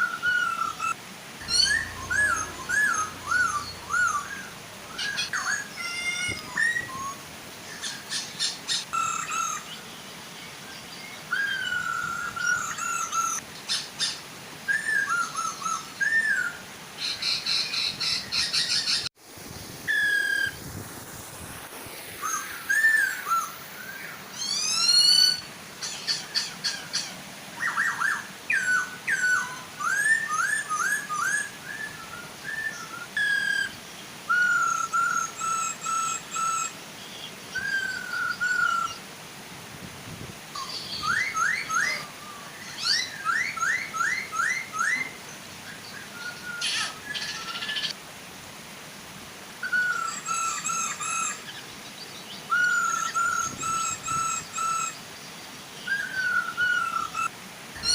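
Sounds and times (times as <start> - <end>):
birds whistling and chirping: 0.0 - 9.8, 10.4 - 19.1, 19.9 - 20.6, 22.2 - 39.0, 40.6 - 48.0, 49.6 - 55.0, 55.8 - 57.9
waterfall rushing: 0.0 - 57.9.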